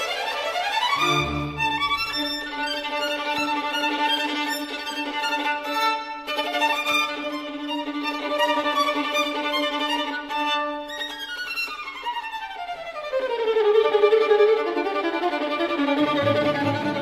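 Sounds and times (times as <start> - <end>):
violin playing: 0.0 - 17.0
lower strings: 0.9 - 2.7.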